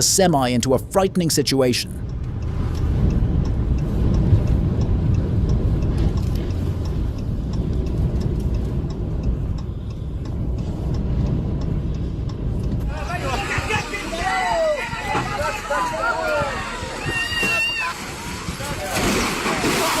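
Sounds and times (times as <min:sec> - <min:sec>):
wind and road noise rumble: 0:00.0 - 0:20.0
faint repeating tick: 0:01.9 - 0:13.9.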